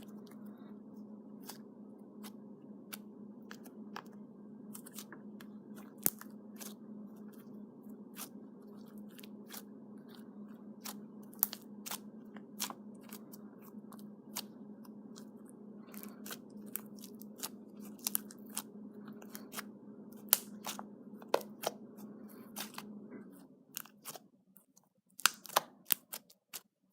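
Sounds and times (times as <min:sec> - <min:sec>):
low hum: 0:00.0 - 0:24.5
slime popping and crackling: 0:05.8 - 0:06.8, 0:10.8 - 0:15.3, 0:15.9 - 0:19.6, 0:20.2 - 0:20.8, 0:25.2 - 0:26.6.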